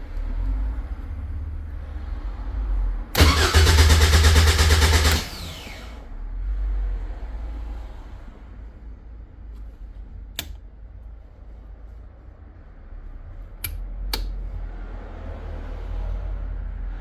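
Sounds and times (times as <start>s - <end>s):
steady low rumble: 4.3s - 17.0s
sharp clicks: 10.4s - 10.6s, 13.6s - 14.4s.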